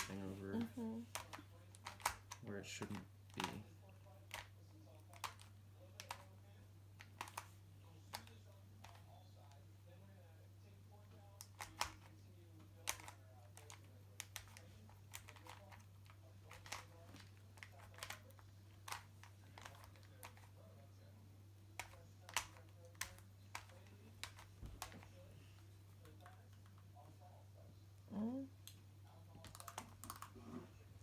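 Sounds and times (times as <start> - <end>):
plastic puzzle cube clicking: 1.1 - 2.4, 12.8 - 20.5, 21.8 - 25.0.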